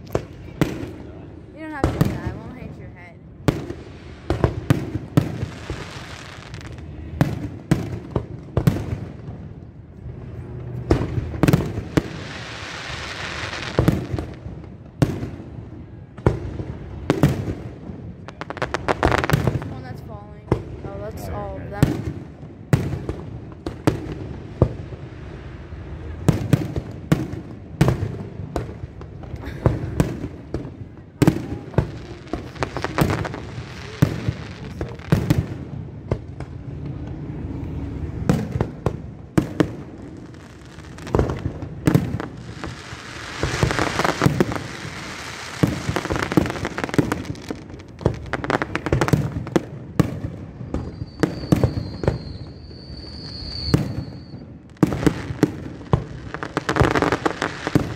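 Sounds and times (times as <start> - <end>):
fireworks bangs: 0.0 - 57.9
fireworks crackling: 0.0 - 57.9
steady high whistle: 50.8 - 54.6.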